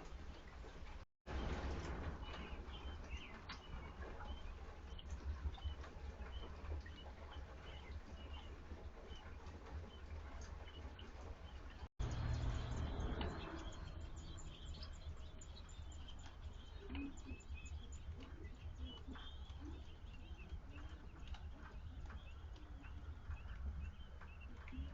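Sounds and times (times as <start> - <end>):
birds chirping: 2.2 - 24.9
low steady rumble: 12.0 - 16.6.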